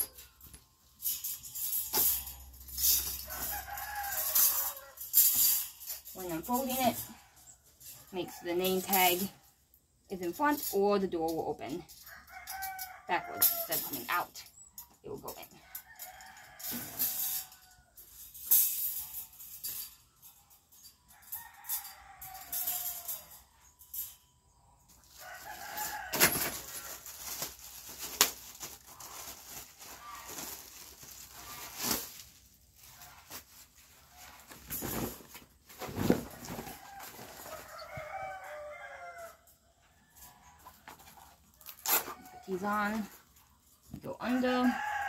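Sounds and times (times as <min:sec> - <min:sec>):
wire cage rattling: 0:00.0 - 0:09.3, 0:15.7 - 0:24.3.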